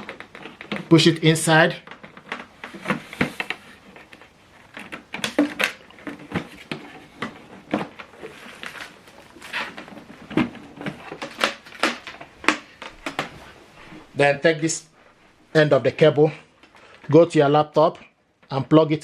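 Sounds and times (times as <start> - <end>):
cable plug clicks and rustles: 0.0 - 13.5.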